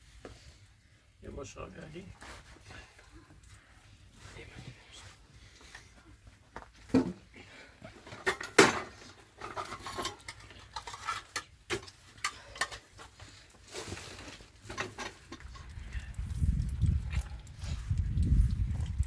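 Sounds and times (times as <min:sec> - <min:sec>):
dishes and utensils clattering: 0:08.1 - 0:12.9.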